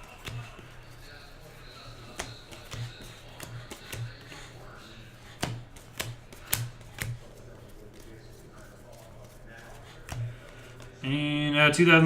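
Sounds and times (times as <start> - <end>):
trading cards clicking and snapping: 2.0 - 4.5, 5.2 - 7.3.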